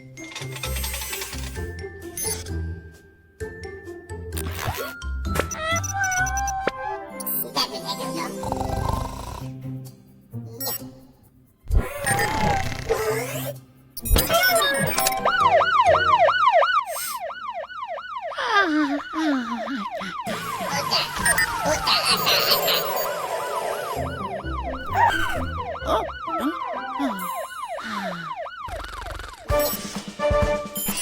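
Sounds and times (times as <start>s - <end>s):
music: 0.0s - 16.4s, 20.3s - 27.6s, 29.5s - 31.0s
cartoon sound effects: 4.4s - 8.5s, 11.8s - 16.2s, 18.4s - 29.8s
cartoon siren warbling: 5.5s - 7.0s, 14.2s - 29.6s.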